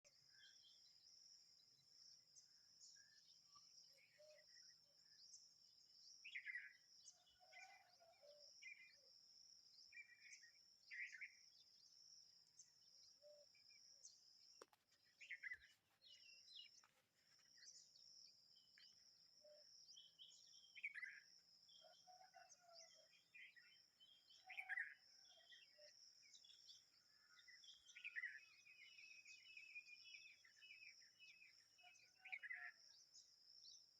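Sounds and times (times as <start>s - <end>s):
bird chirps: 0.0s - 33.9s.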